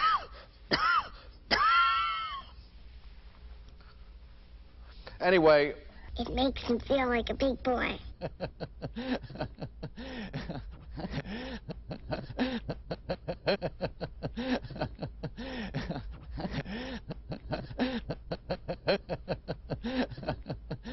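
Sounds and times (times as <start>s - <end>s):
person coughing: 0.0s - 1.8s.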